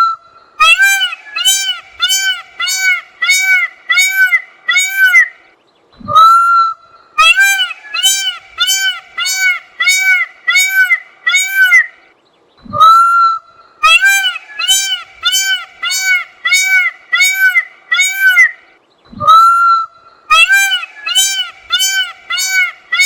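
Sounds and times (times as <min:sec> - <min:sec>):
peacock upward-sliding call: 0:00.6 - 0:05.3, 0:07.2 - 0:11.9, 0:13.8 - 0:18.6, 0:19.3 - 0:23.0
peacock honking calls: 0:00.6 - 0:05.4, 0:07.2 - 0:12.0, 0:13.8 - 0:18.6, 0:20.3 - 0:23.0.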